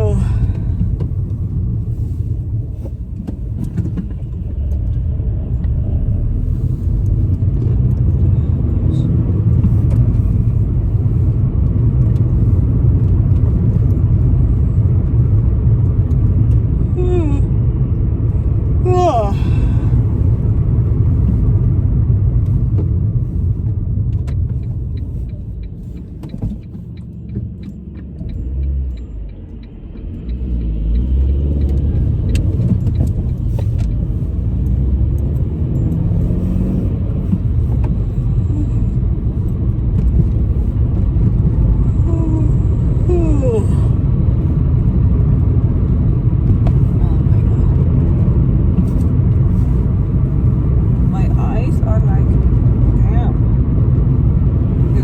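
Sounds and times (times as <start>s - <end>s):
car engine and tyre rumble: 0.0s - 55.0s.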